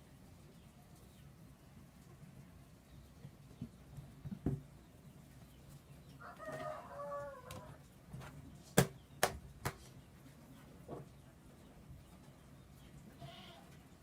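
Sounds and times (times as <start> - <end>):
chicken calling: 6.2 - 7.8.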